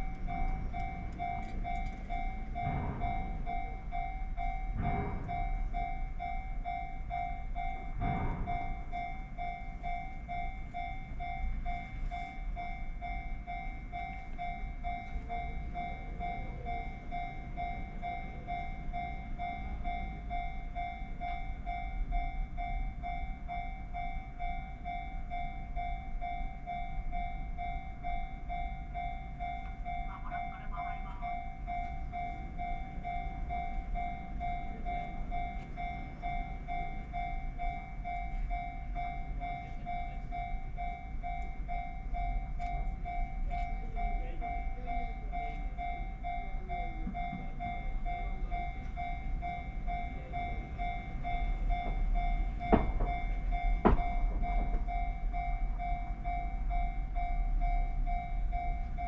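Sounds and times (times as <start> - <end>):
level-crossing alarm dinging: 0.0 - 59.0
low rumble: 0.0 - 59.0
sharp knocks: 53.8 - 54.1.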